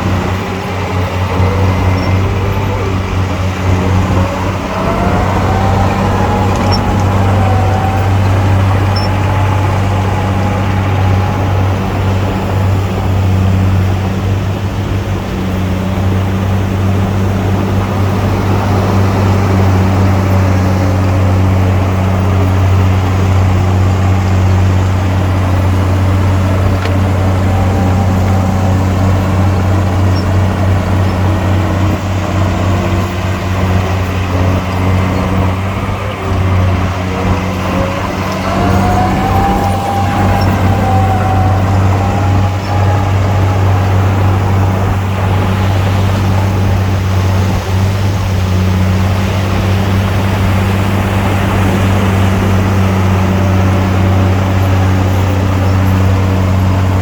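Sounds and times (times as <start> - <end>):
diesel engine droning: 0.0 - 57.0
whine drifting in pitch: 0.0 - 57.0.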